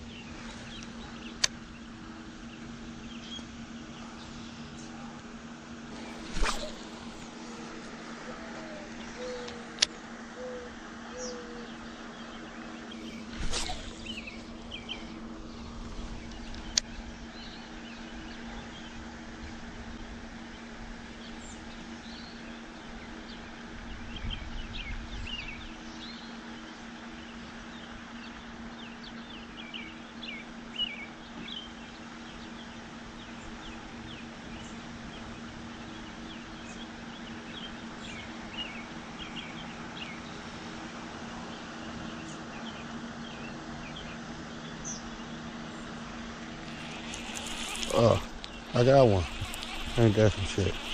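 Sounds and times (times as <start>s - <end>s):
small birds chirping: 0.0s - 19.0s, 41.4s - 50.9s
steady low hum: 0.0s - 50.9s.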